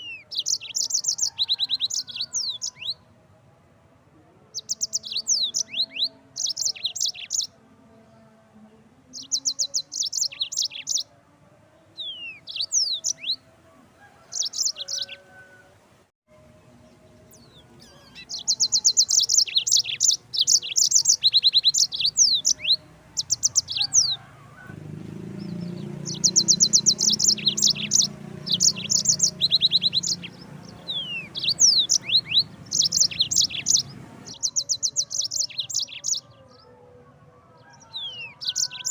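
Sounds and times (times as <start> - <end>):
canary singing buzzy trills: 0.0 - 3.0, 4.6 - 7.5, 9.2 - 11.0, 12.0 - 13.4, 17.3 - 24.4, 25.3 - 36.4.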